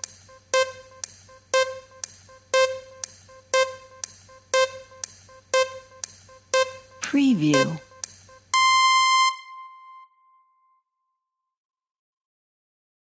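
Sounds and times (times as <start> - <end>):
countdown clock ticking: 0.0 - 9.7.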